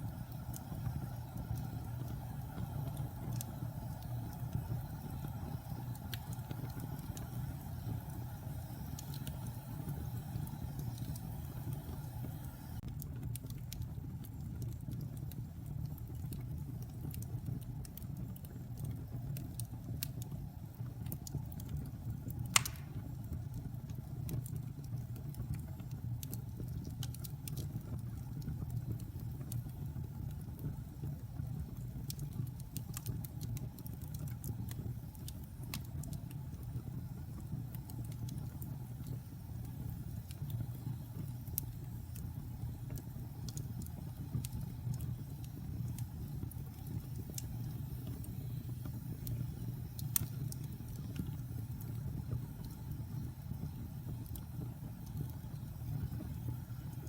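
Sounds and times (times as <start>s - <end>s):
fire crackling: 0.0s - 57.0s
sharp pops: 22.5s - 23.1s.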